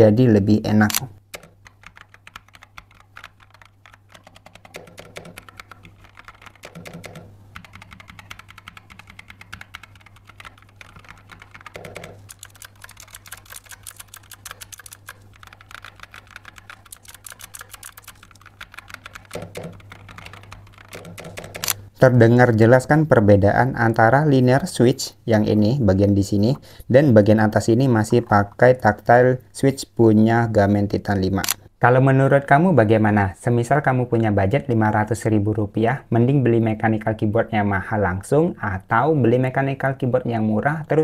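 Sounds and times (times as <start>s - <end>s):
rapid typing on mechanical keyboard: 1.4s - 21.9s.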